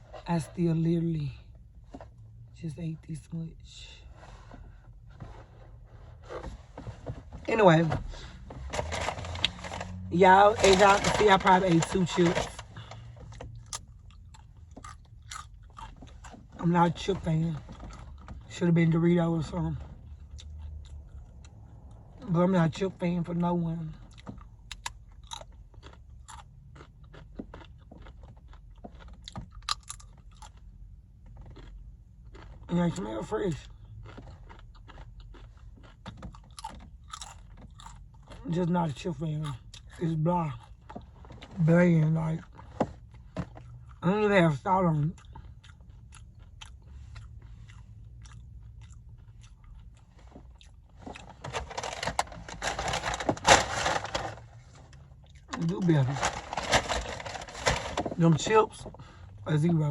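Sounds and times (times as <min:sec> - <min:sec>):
chips being crunched and chewed: 0:08.7 - 0:12.9, 0:13.6 - 0:16.4, 0:24.2 - 0:30.7, 0:31.4 - 0:38.5, 0:45.1 - 0:58.2.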